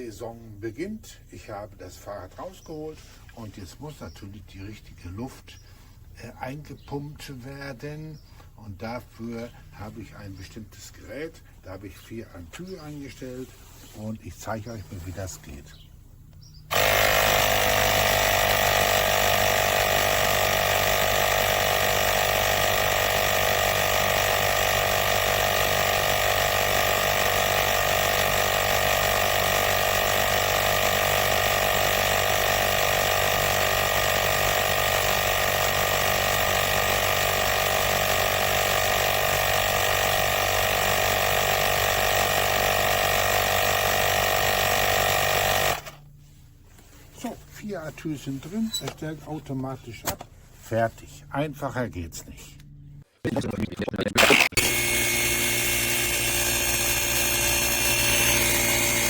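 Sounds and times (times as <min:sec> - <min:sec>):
mini air compressor running: 0:16.7 - 0:46.0, 0:54.2 - 0:59.0.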